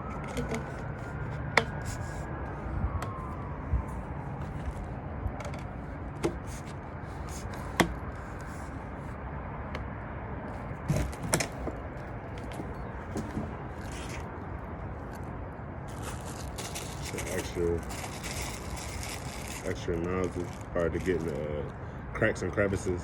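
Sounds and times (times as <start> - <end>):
plastic parts clicking and knocking: 0.2 - 0.8.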